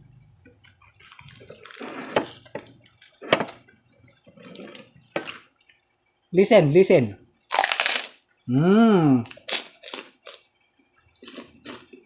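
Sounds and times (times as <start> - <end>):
chewing and mouth smacking: 0.6 - 1.8
crispy food crunching: 0.6 - 2.1, 7.4 - 8.4, 9.1 - 10.5, 11.2 - 12.0.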